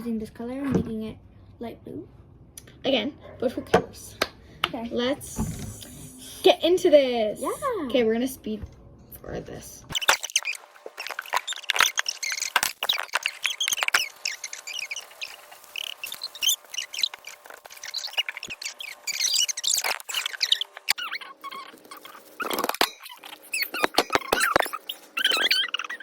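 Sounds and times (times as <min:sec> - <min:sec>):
squeaky slime chirps and clicks: 0:09.9 - 0:26.0.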